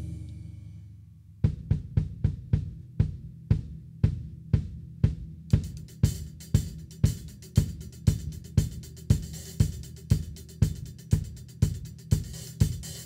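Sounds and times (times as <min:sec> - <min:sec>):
drum kit groove: 0:00.0 - 0:00.6, 0:01.4 - 0:13.0
cymbal wash: 0:00.0 - 0:01.0.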